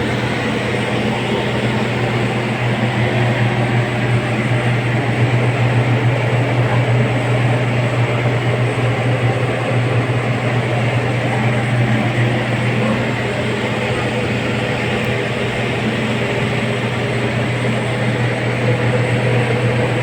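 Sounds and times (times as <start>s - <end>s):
steam boiler burner and fan: 0.0s - 20.0s.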